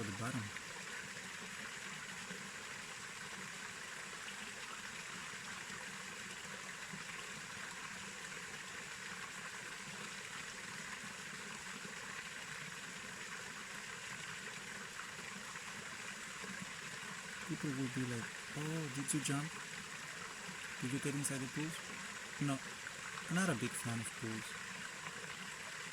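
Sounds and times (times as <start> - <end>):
waterfall rushing: 17.5 - 19.5, 20.8 - 21.8, 22.4 - 22.6, 23.3 - 24.5.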